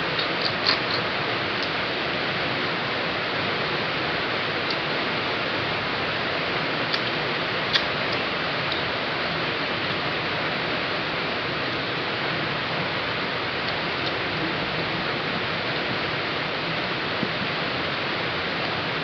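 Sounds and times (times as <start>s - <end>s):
heavy rain falling: 0.0s - 19.0s
faint clicks of snail shells: 6.9s - 8.8s.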